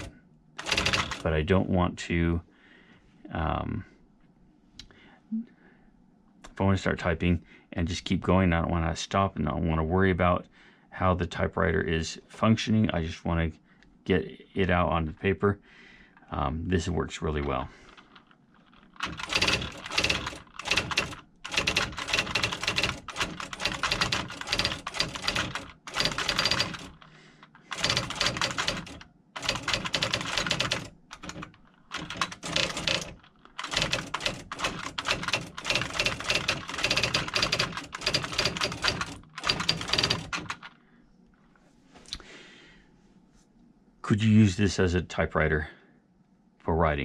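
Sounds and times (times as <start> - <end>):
electronic typewriter typing: 0.0 - 1.4, 17.9 - 40.7.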